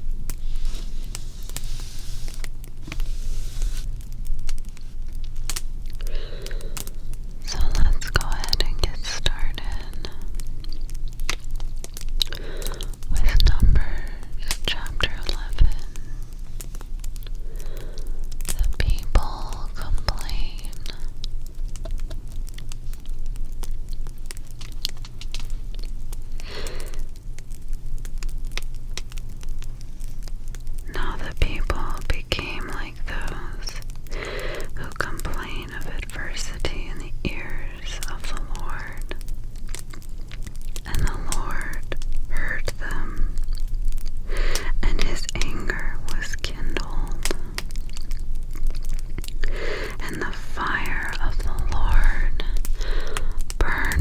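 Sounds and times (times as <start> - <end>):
fire popping and snapping: 0.0 - 54.0
soft hiss: 0.0 - 54.0
person whispering: 6.7 - 10.4, 12.4 - 16.2, 17.6 - 21.2, 30.9 - 33.9, 34.7 - 39.2, 40.8 - 43.4, 44.5 - 47.6, 49.7 - 54.0
low rumble: 50.2 - 54.0.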